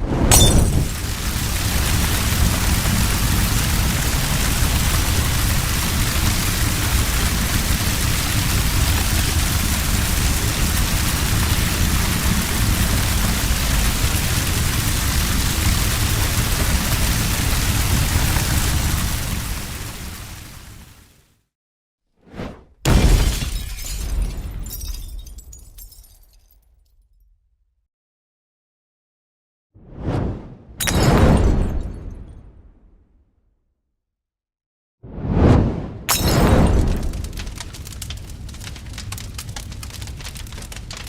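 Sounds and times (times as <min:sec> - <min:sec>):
flames burning with deep rumble: 0:00.0 - 0:21.2, 0:29.8 - 0:31.8, 0:35.1 - 0:41.0.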